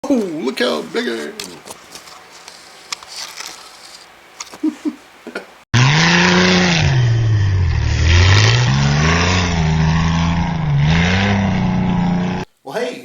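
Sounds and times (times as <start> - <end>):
vehicle engine revving: 5.8 - 12.5.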